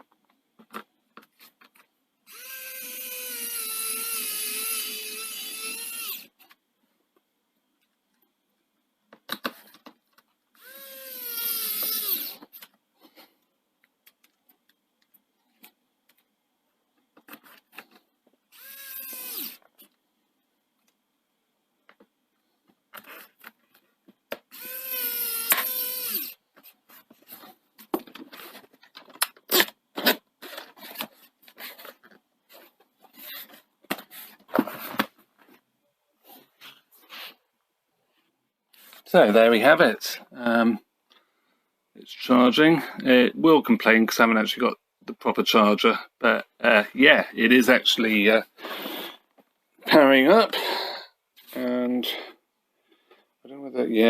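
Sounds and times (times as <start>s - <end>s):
electric screwdriver whirring: 2.3s - 6.2s, 10.6s - 12.4s, 18.5s - 19.6s, 24.5s - 26.4s.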